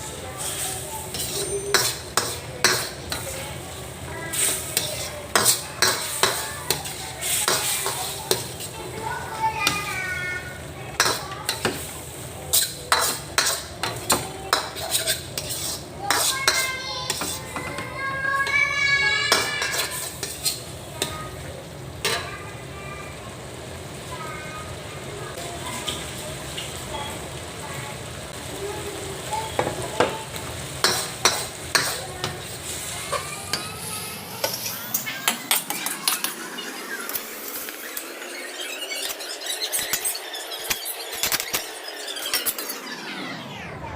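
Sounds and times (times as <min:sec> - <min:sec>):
light sizzle: 0:00.0 - 0:43.5
metal utensil scraping a pan: 0:00.4 - 0:03.5, 0:04.3 - 0:09.9, 0:11.0 - 0:21.2, 0:30.7 - 0:37.2.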